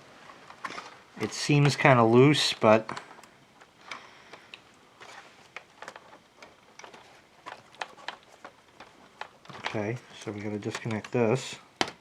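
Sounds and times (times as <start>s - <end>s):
plastic parts clicking and tapping: 2.8s - 12.0s.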